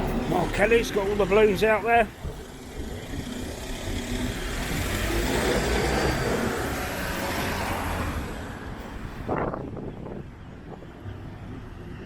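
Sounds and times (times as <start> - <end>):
vehicle passing by: 2.4 - 9.6.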